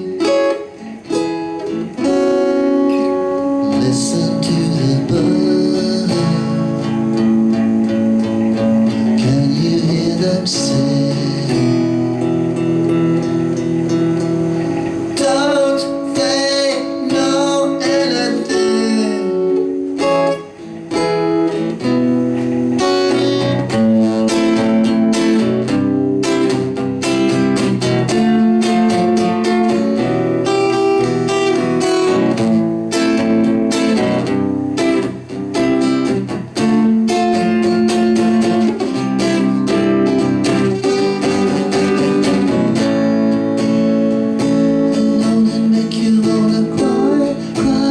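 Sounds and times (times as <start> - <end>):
wavering sung or whistled line: 0.0 - 25.5
acoustic guitar strummed and plucked: 0.0 - 47.9.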